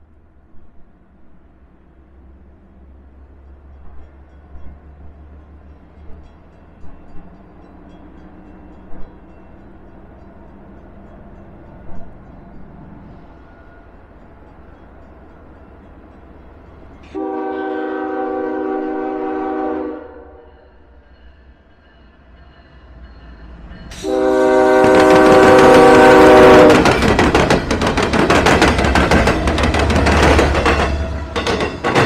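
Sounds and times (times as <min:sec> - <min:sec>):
train passing with wheel clatter: 0:00.0 - 0:32.0
locomotive air horn: 0:17.1 - 0:20.8, 0:23.9 - 0:26.9.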